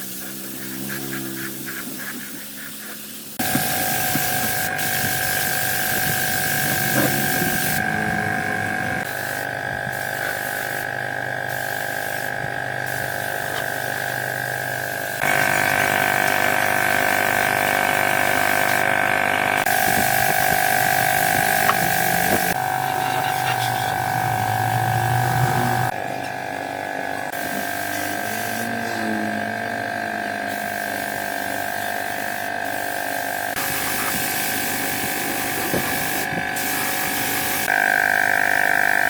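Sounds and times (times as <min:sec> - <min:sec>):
small electric motor whining: 0:03.4 - 0:26.0.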